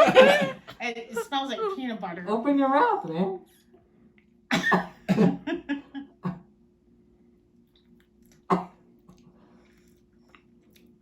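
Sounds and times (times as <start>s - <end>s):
man coughing: 0.0s - 0.6s, 4.5s - 5.6s
faint steady hum: 0.0s - 11.0s.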